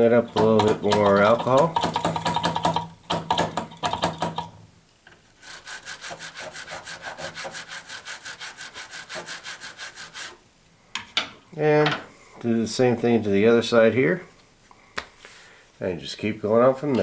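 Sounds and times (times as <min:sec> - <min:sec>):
toothbrush scrubbing metal rail: 0:00.0 - 0:01.9, 0:05.4 - 0:10.4.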